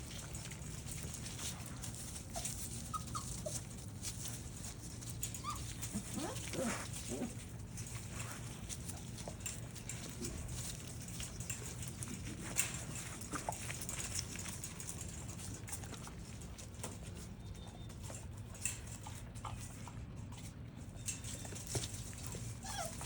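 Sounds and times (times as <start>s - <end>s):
puppy paws pattering and clicking: 0.0s - 23.0s
faint puppy squeak: 5.4s - 6.8s, 17.2s - 18.4s, 20.8s - 23.0s.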